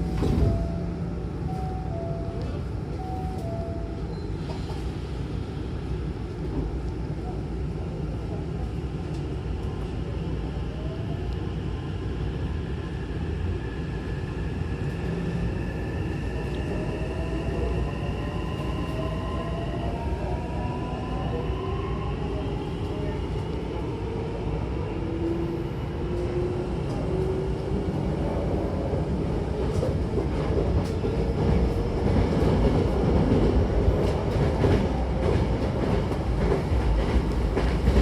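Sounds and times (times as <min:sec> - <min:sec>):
train running rumble: 0:26.0 - 0:38.0.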